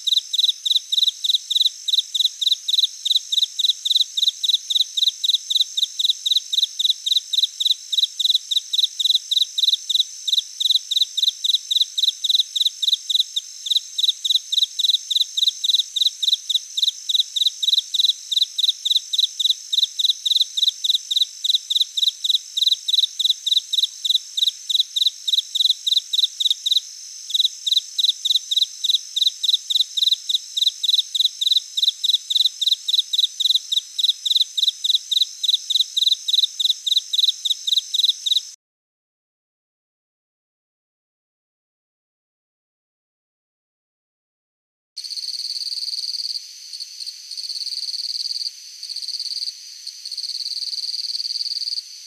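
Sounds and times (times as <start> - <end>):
insect chirping: 0.0 - 38.6, 45.0 - 52.0.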